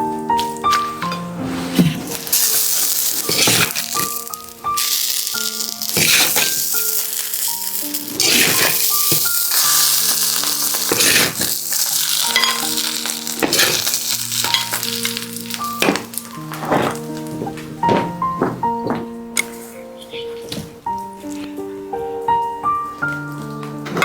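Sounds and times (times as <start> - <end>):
instrumental music with held notes: 0.0 - 24.0
food sizzling in a hot pan: 2.1 - 17.2.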